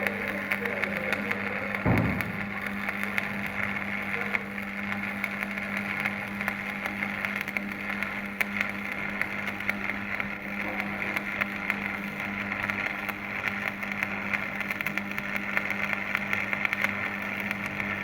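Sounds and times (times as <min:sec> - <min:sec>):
welding arc crackling: 0:00.0 - 0:18.0
low hum: 0:01.8 - 0:04.2
short thud: 0:01.9 - 0:02.7.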